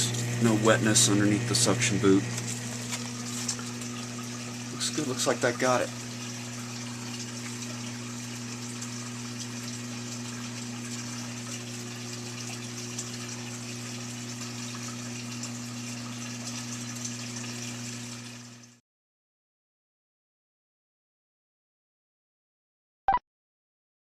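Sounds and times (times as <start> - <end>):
washer drain pump humming: 0.0 - 18.8
water rushing through pump: 0.0 - 18.8.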